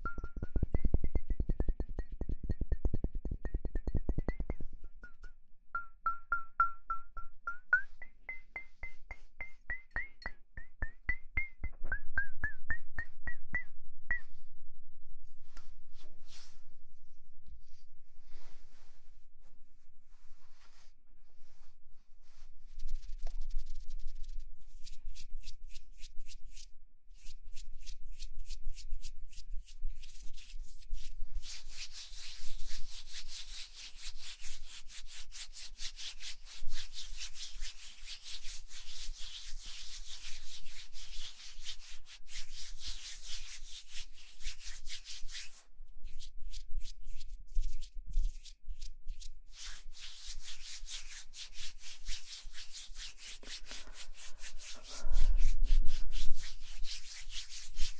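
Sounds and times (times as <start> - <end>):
scratchy rubbing strokes: 21.5 - 57.9.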